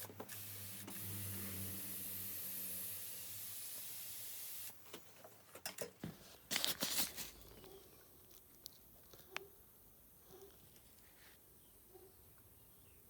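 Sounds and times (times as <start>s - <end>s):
small electric motor running: 0.0s - 4.7s
short loud hissing bursts: 0.0s - 4.8s.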